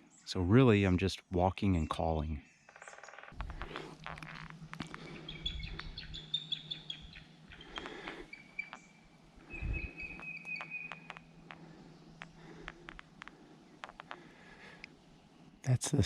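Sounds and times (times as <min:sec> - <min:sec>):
other birds: 0:01.8 - 0:15.6
eagle high squeaky chirping: 0:02.7 - 0:14.7
eagle twittering trill: 0:02.8 - 0:14.2.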